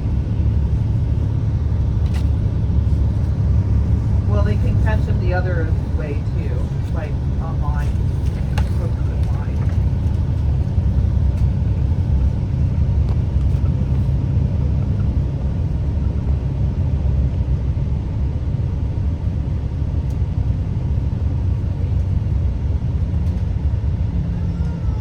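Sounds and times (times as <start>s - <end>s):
bus engine rumble: 0.0s - 25.0s
road noise: 0.0s - 25.0s.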